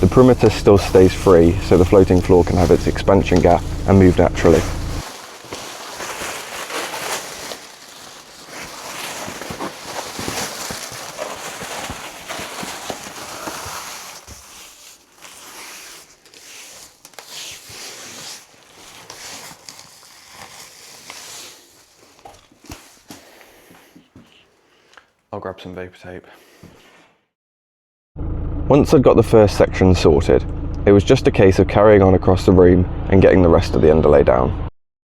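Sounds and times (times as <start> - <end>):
foil crinkling and crackling: 0.0 - 23.4.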